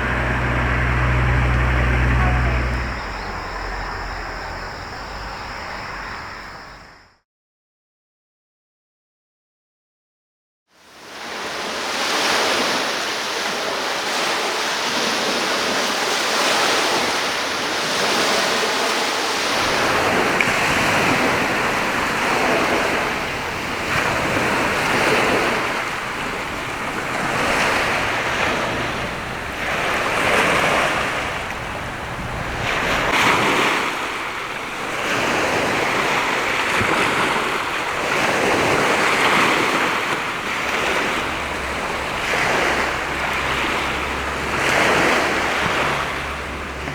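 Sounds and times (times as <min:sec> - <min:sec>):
sea waves washing onto shore: 0:00.0 - 0:06.4, 0:10.9 - 0:46.9
wind buffeting microphone: 0:00.0 - 0:06.8, 0:15.7 - 0:46.9.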